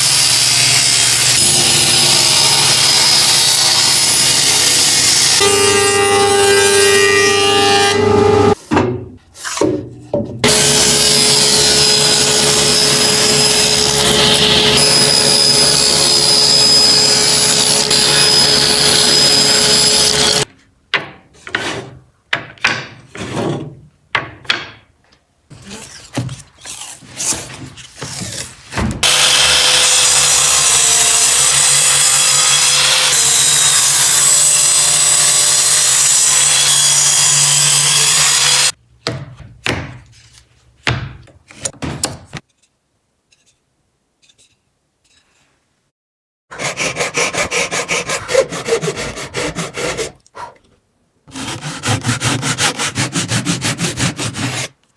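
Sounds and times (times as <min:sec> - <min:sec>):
power tool running on wood: 0:00.0 - 0:05.5, 0:10.5 - 0:20.5, 0:29.0 - 0:38.8.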